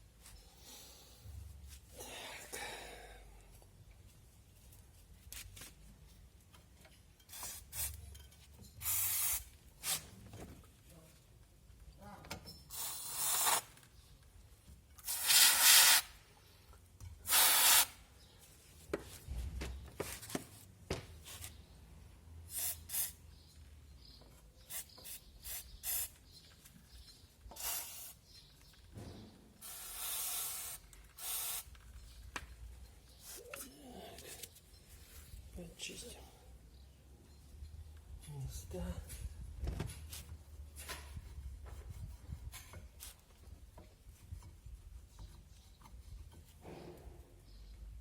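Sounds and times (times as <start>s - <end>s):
aerosol spray hissing bursts: 8.8s - 9.4s, 15.1s - 16.1s, 17.3s - 18.0s, 29.6s - 31.7s.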